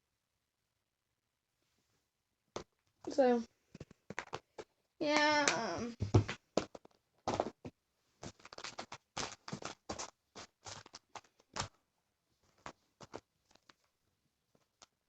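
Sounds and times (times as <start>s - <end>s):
hands handling small objects: 8.2s - 11.8s, 12.4s - 13.9s.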